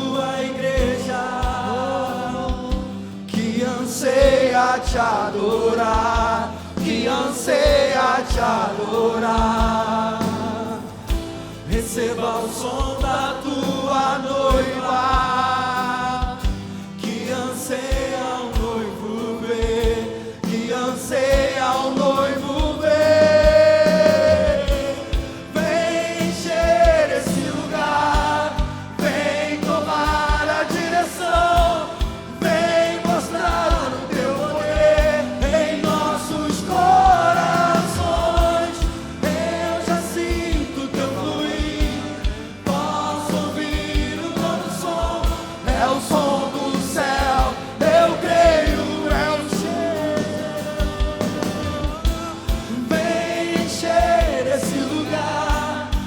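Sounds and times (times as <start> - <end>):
band with steady beat: 0.0 - 56.0
voices singing gospel melody: 0.0 - 56.0.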